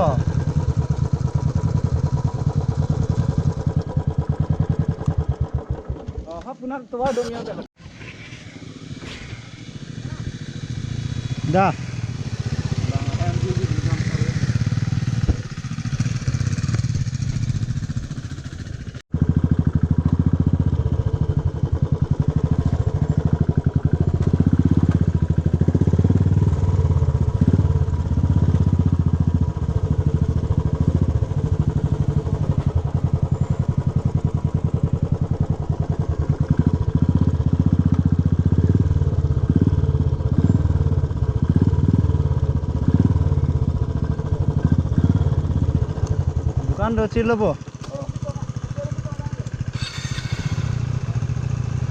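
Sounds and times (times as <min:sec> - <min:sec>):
vehicle engine running: 0:00.0 - 0:51.9.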